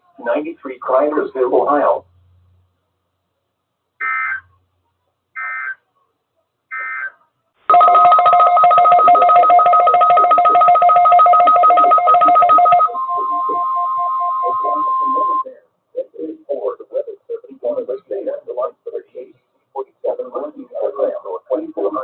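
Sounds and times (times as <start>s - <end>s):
digital data tone bursts: 7.7s - 15.5s
two-pitch alert tone: 8.9s - 15.5s.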